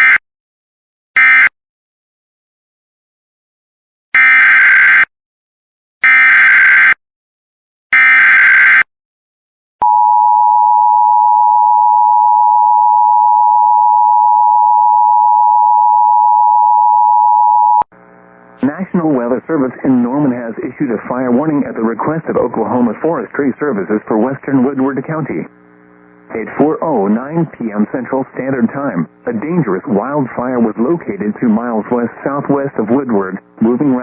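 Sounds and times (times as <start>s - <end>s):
loud steady attention tone: 9.8s - 30.2s.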